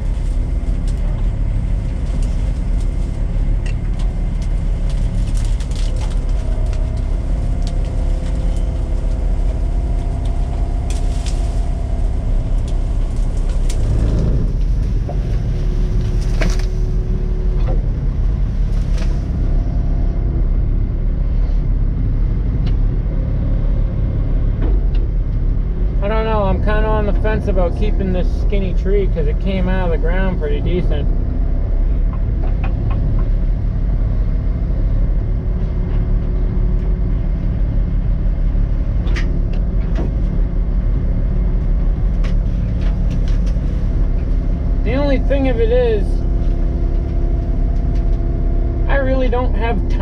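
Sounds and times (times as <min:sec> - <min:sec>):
excavator diesel engine running: 0:00.0 - 0:50.0.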